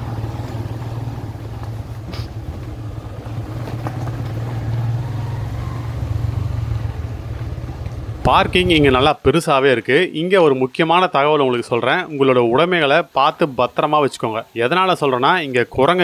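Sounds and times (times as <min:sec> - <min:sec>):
car engine humming: 0:00.0 - 0:09.1
road and wind noise: 0:00.0 - 0:09.3.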